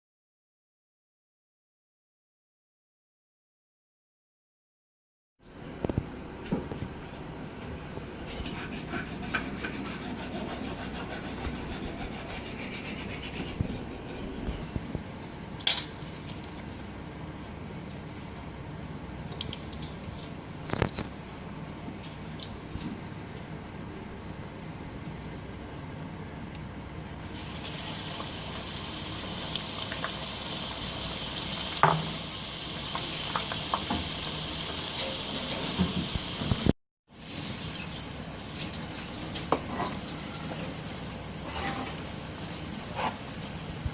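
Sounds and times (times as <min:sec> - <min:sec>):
fast rhythmic rubbing: 0:08.5 - 0:14.7
food sizzling in hot oil: 0:27.3 - 0:43.9.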